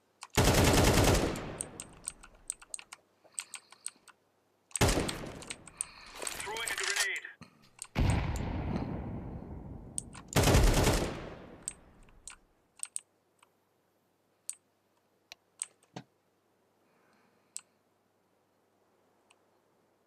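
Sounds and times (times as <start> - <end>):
faint clicks: 1.3 - 8.5, 11.6 - 13.6, 17.1 - 17.8.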